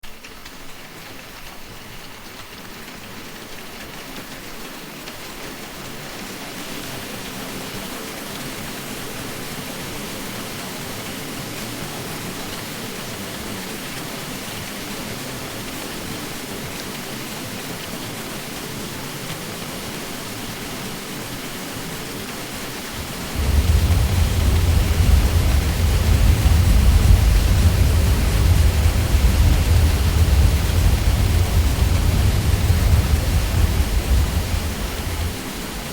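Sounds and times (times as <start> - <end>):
ceiling fan drone: 22.9 - 35.9
deep low hum: 23.0 - 35.9.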